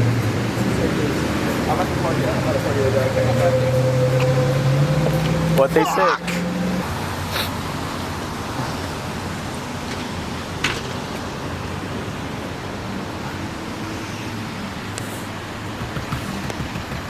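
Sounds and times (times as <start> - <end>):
car engine hum and rumble: 0.0 - 17.0.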